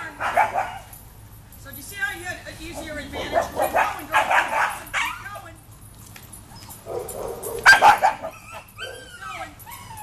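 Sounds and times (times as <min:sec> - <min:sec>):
dog barking and yipping: 0:00.0 - 0:01.1, 0:02.8 - 0:05.4, 0:06.5 - 0:10.0.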